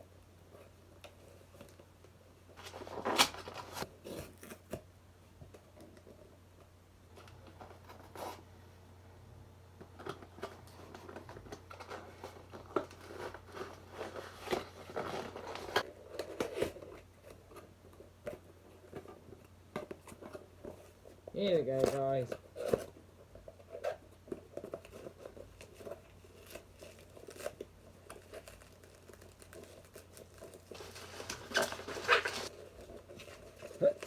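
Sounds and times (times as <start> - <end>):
cardboard box tearing: 30.4 - 32.5.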